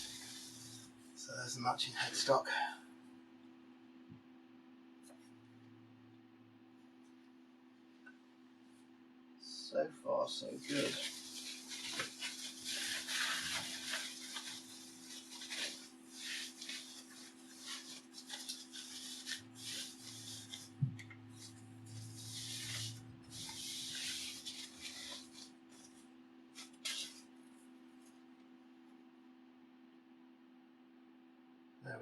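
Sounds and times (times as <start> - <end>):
plastic wrap rustling and crinkling: 0.0 - 1.2, 10.4 - 28.2.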